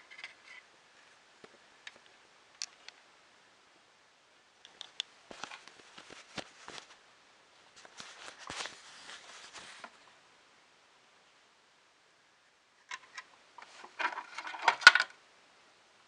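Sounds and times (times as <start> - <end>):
plastic parts clicking and tapping: 12.8 - 15.2.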